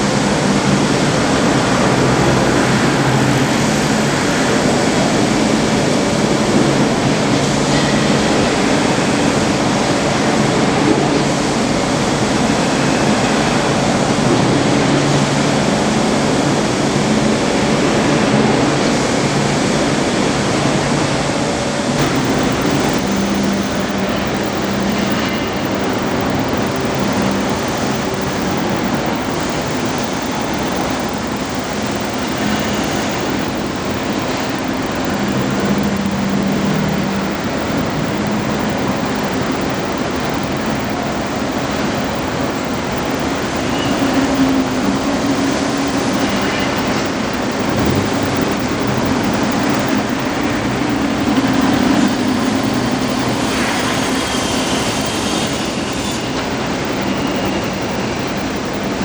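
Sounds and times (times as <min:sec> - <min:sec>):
machinery and traffic rumble: 0:00.0 - 0:19.8.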